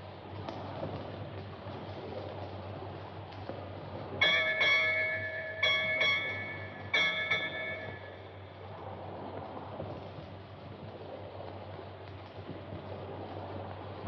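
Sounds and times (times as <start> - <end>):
ship's bell struck: 4.2 - 8.7.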